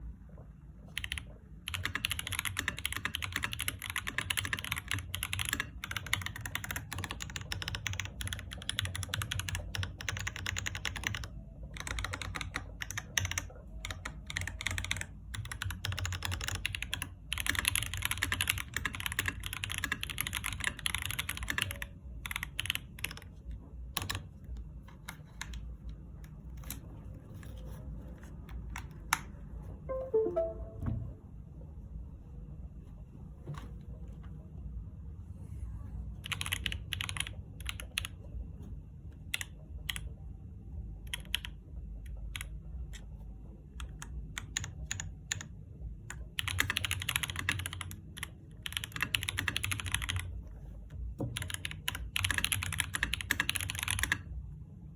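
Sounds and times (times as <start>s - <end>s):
mechanical keyboard clacking: 0.9s - 23.3s, 23.9s - 24.2s, 36.2s - 38.1s, 46.3s - 50.3s, 51.3s - 54.2s.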